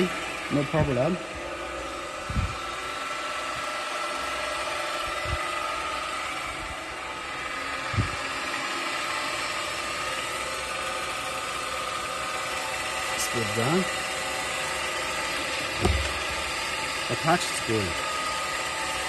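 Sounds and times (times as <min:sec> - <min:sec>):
mixer machine hum: 0:00.0 - 0:19.0
dull low thumps: 0:15.8 - 0:16.4.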